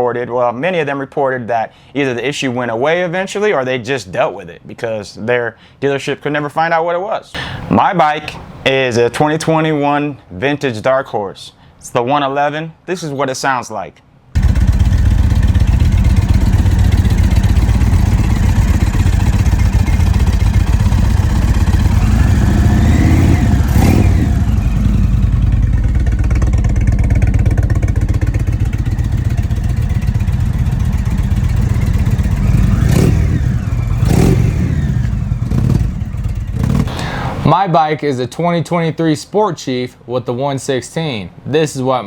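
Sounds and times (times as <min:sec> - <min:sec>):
motorcycle engine idling and revving: 0:14.4 - 0:37.0.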